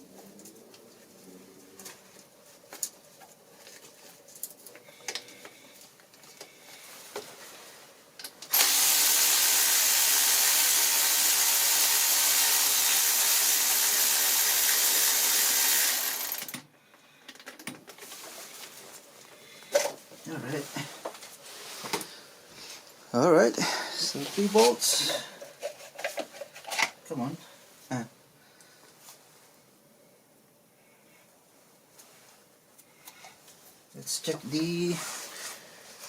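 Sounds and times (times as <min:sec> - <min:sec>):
power tool running: 0:08.5 - 0:16.6.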